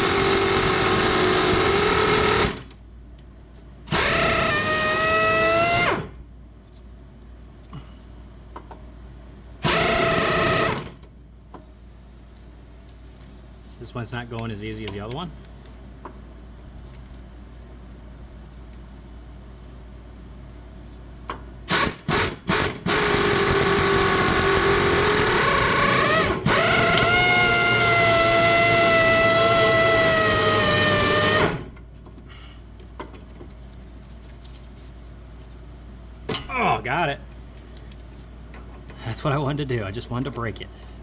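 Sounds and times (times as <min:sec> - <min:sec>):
power tool whining: 0:03.9 - 0:06.1, 0:09.6 - 0:10.9, 0:21.7 - 0:31.7.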